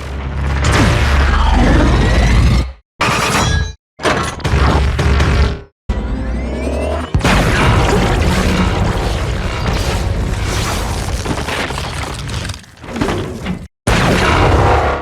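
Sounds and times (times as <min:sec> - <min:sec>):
rumbling crash noise: 0:07.2 - 0:12.6.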